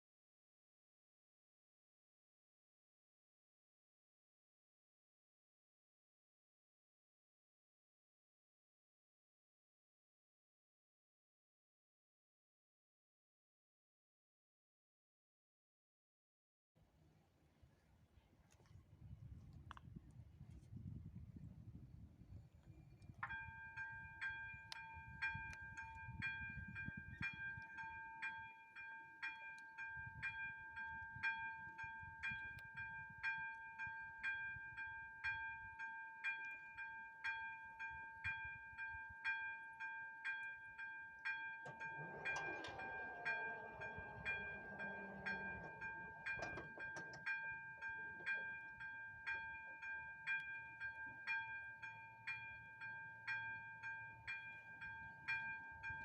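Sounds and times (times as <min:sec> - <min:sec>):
level crossing bell ringing: 0:40.0 - 0:56.0
passing vehicle: 0:41.7 - 0:47.2.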